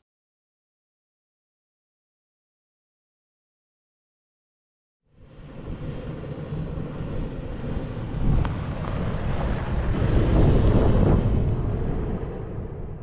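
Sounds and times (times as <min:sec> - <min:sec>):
strong gusting wind on microphone: 0:05.1 - 0:13.0.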